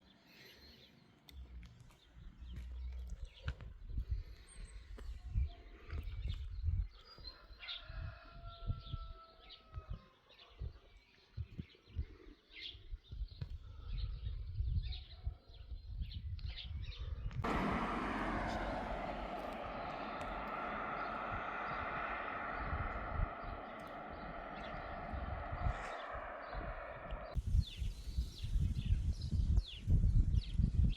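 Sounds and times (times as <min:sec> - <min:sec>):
wind rumbling on microphone: 0:17.3 - 0:30.9
birds chirping: 0:17.4 - 0:27.4
siren starting up: 0:17.4 - 0:27.4.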